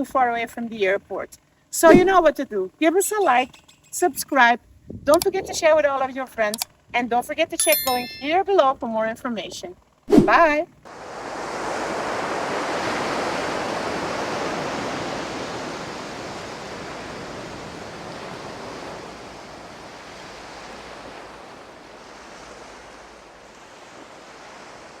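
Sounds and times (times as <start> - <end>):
wind: 9.8 - 25.0
ocean surf: 10.9 - 25.0.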